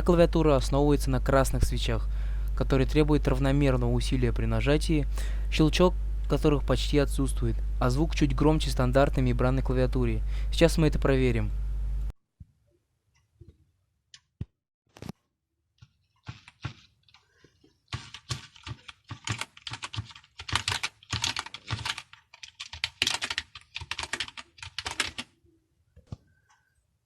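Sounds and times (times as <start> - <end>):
typing on computer keyboard: 17.9 - 25.3.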